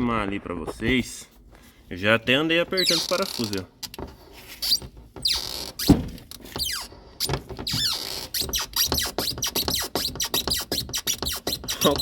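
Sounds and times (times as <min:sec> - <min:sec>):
car door check squeaking: 0:02.7 - 0:03.7, 0:04.5 - 0:12.0.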